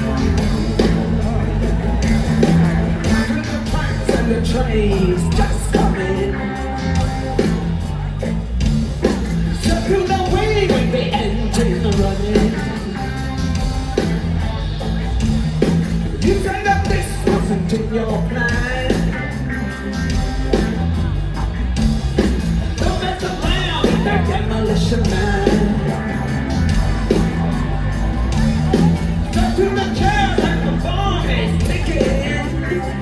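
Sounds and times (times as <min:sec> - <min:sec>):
repeating bass line: 0:00.0 - 0:33.0
rock band playing: 0:00.0 - 0:33.0.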